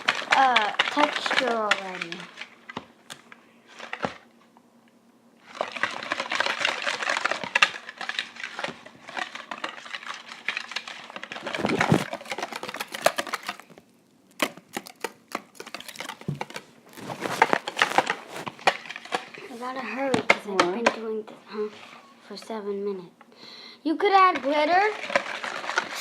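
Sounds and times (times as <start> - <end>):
whisk mixing sticky slime: 0.0 - 2.6, 5.4 - 13.7, 14.4 - 20.7, 24.0 - 26.0.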